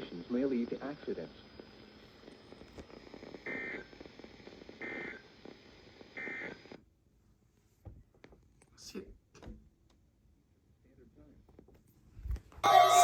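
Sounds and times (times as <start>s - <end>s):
background hiss: 0.0s - 7.8s
digital data squawk: 12.6s - 13.0s.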